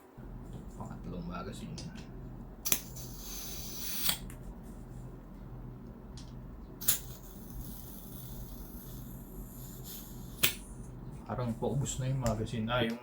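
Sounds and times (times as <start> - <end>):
gas hissing from a can: 2.6 - 4.3, 6.8 - 10.7.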